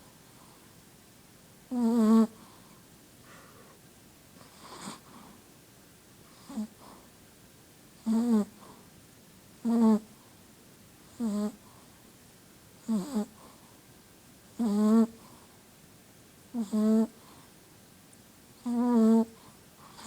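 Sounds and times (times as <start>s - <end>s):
soft breaths: 0.0s - 1.0s, 2.2s - 5.6s, 6.2s - 7.3s, 8.0s - 9.0s, 11.5s - 12.2s, 12.8s - 14.1s, 15.0s - 15.8s, 16.6s - 20.0s
dog snoring: 1.7s - 2.5s, 4.4s - 5.2s, 6.3s - 7.0s, 8.0s - 8.8s, 9.6s - 10.1s, 11.1s - 11.7s, 12.8s - 13.6s, 14.6s - 15.4s, 16.5s - 17.3s, 18.6s - 20.0s.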